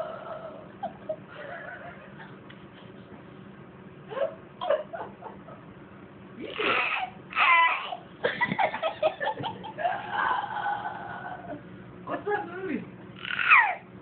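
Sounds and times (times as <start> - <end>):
baby making croaking sounds: 6.5 - 8.0, 13.2 - 13.8
baby laughing: 6.6 - 11.5.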